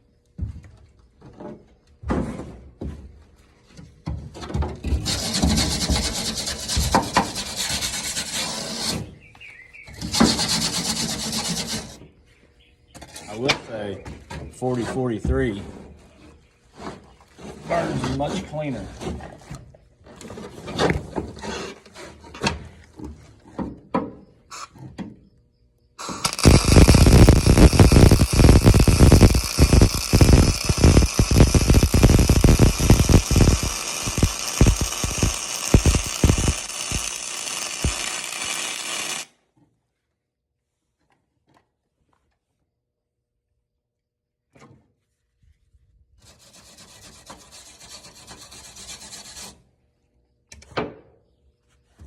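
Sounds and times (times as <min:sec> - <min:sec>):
power tool hammering rattle: 0:04.8 - 0:09.0, 0:09.9 - 0:12.0, 0:26.0 - 0:39.3.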